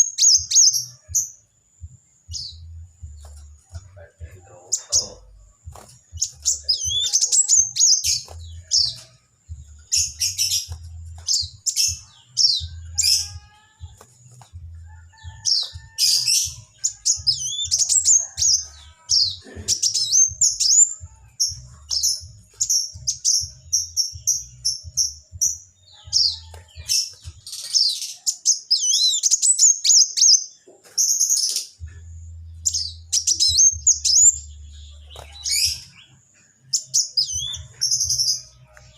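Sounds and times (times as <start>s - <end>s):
songbird twittering: 0.0s - 14.5s, 15.2s - 38.9s.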